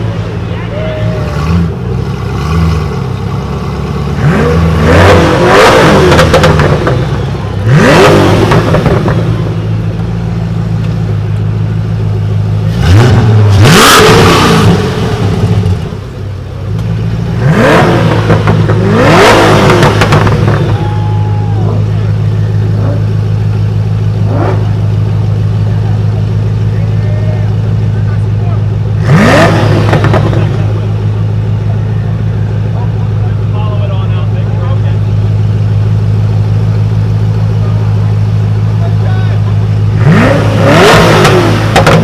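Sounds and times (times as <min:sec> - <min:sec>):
car engine idling and revving: 0:00.0 - 0:42.0.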